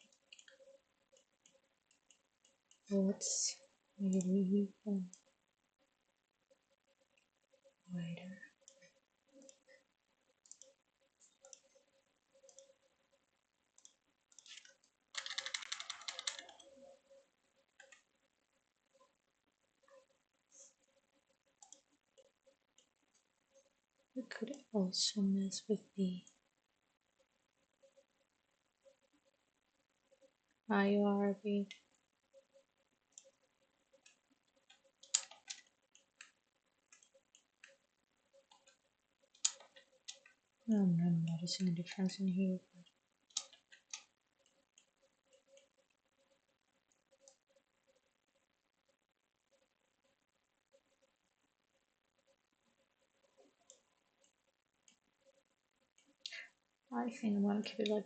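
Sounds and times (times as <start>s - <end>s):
computer mouse and keyboard clicks: 0.0s - 2.9s, 10.4s - 12.8s, 13.8s - 17.0s, 17.7s - 18.1s, 32.4s - 40.4s, 42.8s - 46.3s
mouse and keyboard clicks: 13.8s - 16.8s, 34.0s - 37.8s, 39.4s - 40.4s, 43.3s - 45.7s.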